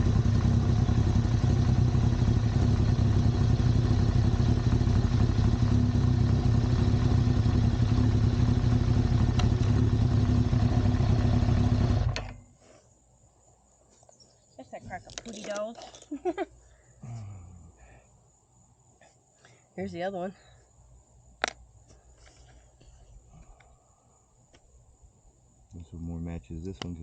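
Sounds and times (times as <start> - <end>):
motorcycle engine idling: 0.0 - 12.6.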